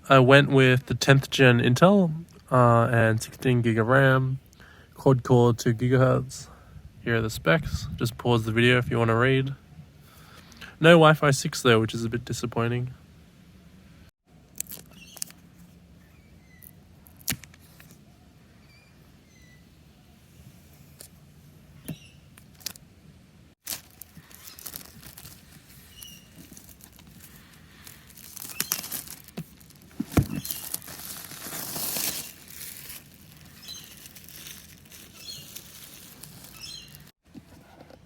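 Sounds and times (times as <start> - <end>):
plastic wrap crinkling and tearing: 23.6 - 37.1
cardboard rustling: 23.6 - 38.0.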